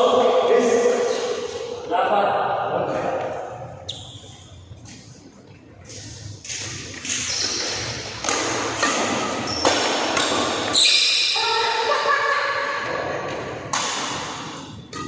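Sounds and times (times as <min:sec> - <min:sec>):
rackets hitting shuttlecock: 0:06.4 - 0:11.4, 0:13.3 - 0:15.0
thin high squeaks: 0:07.1 - 0:08.0.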